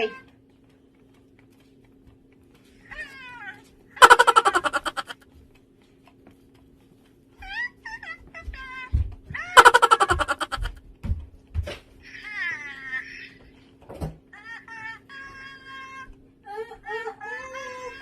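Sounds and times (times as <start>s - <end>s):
electronic toy owl chirping: 4.0s - 5.2s, 9.6s - 10.7s.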